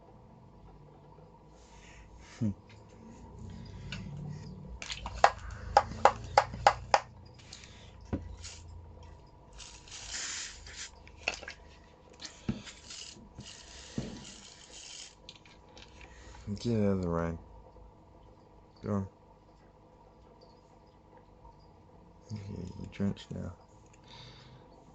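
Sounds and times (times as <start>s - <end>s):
spray bottle hissing: 9.6s - 11.0s
spray bottle trigger pumps: 9.6s - 11.0s.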